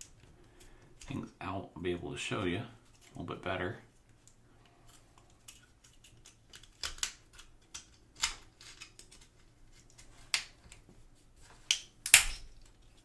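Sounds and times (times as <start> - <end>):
plastic clicks and snaps: 5.2 - 10.9, 11.7 - 13.0.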